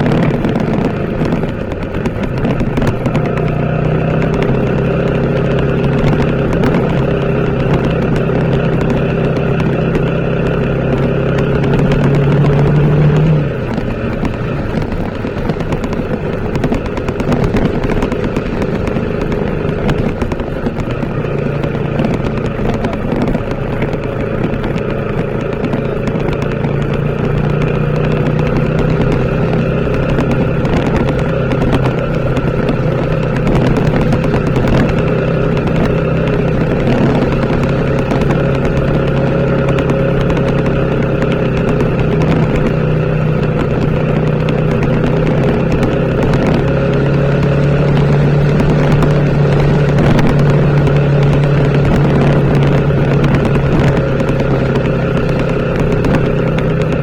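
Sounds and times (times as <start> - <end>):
motorcycle engine running: 0.0 - 57.0.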